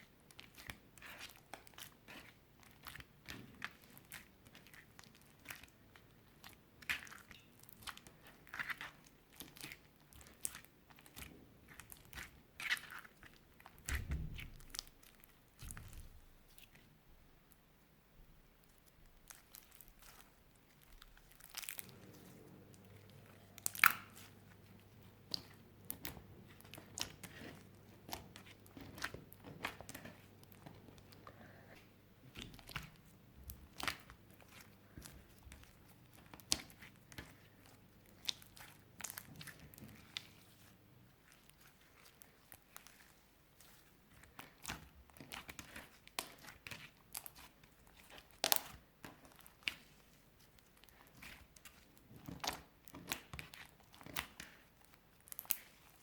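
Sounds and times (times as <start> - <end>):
slime sticky clicks and crackles: 23.0 - 24.3, 25.2 - 31.4, 32.3 - 40.5, 41.3 - 56.0.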